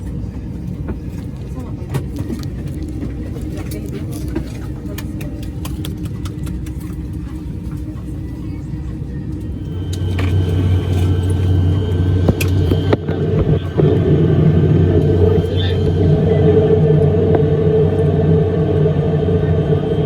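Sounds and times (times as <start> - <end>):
airliner cabin rumble: 0.0 - 20.0
steady hum: 0.0 - 20.0.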